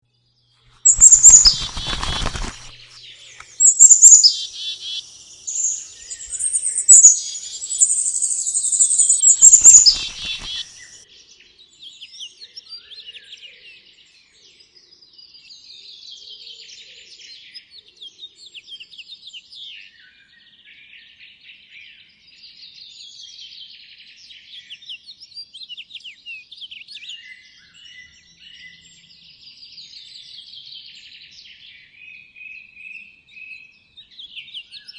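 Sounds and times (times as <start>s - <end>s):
songbirds chirping: 0.0s - 15.4s
rustle: 0.8s - 11.0s.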